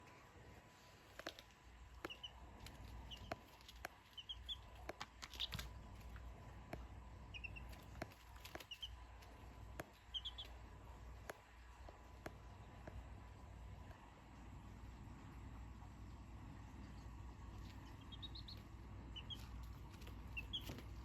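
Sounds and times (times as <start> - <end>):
chicks peeping softly: 0.0 - 21.0
faint clicks and taps: 1.1 - 7.0, 7.7 - 14.0.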